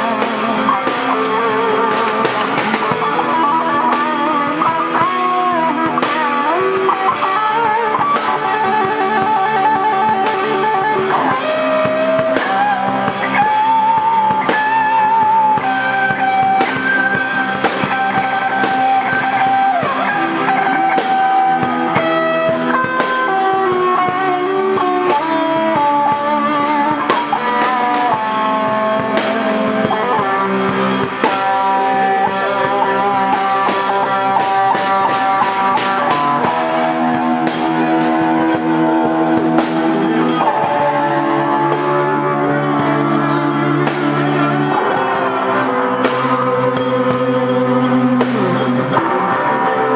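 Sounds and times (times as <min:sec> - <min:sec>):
drum kit: 0:00.0 - 0:49.9
lead guitar melody: 0:00.0 - 0:49.9
rhythm guitars: 0:00.0 - 0:49.9.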